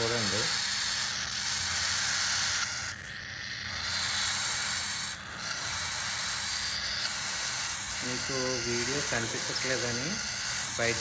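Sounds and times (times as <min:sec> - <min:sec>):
chicks hissing begging noise: 0:00.0 - 0:02.9, 0:03.7 - 0:11.0.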